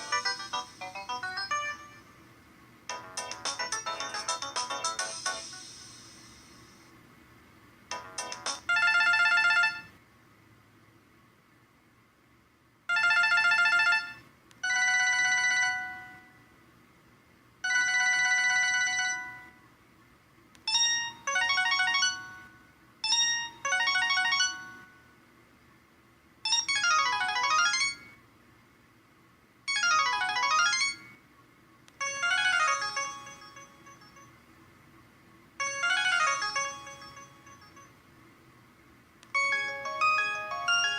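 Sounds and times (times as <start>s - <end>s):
mobile phone ringtone melody: 0.0s - 2.2s, 2.9s - 6.2s, 7.9s - 9.9s, 12.9s - 16.4s, 17.6s - 19.6s, 20.7s - 25.1s, 26.5s - 28.2s, 29.7s - 31.2s, 32.0s - 34.4s, 35.6s - 38.0s, 39.3s - 40.9s.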